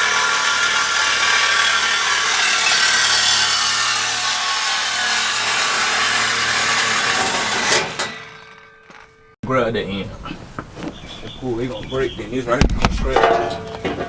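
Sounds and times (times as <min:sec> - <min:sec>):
power saw cutting steel pipe: 0:00.0 - 0:09.4.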